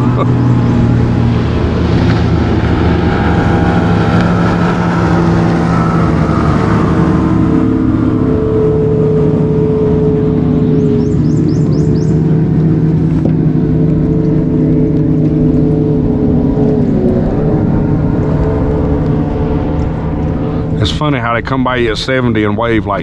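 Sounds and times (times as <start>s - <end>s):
motorboat engines racing past: 0.0s - 23.0s.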